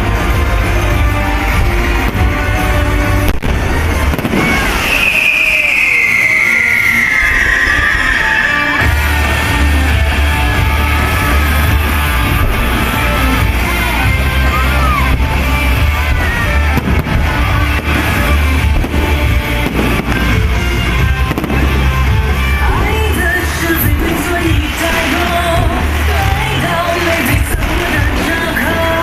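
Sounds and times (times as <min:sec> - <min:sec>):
loud music with heavy bass: 0:00.0 - 0:04.8, 0:06.6 - 0:29.0
person singing: 0:22.3 - 0:29.0.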